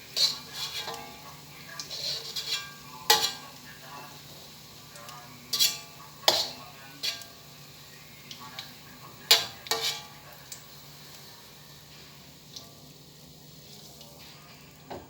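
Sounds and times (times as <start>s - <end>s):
food sizzling in oil: 0.0s - 15.0s
metal utensil striking a wok: 2.3s - 3.4s, 5.5s - 7.3s, 9.3s - 10.1s.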